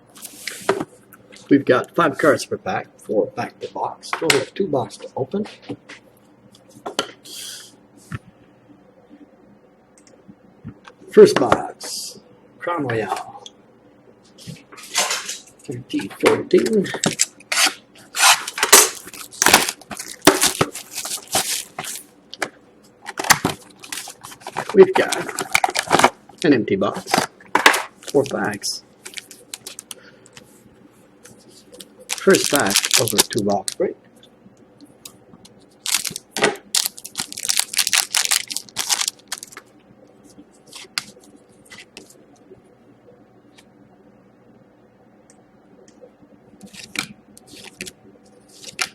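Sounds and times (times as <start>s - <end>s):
wrapping and cardboard crinkling: 17.5s - 22.1s, 23.1s - 27.3s, 27.9s - 30.0s, 31.4s - 33.8s, 35.8s - 39.6s, 48.5s - 48.9s.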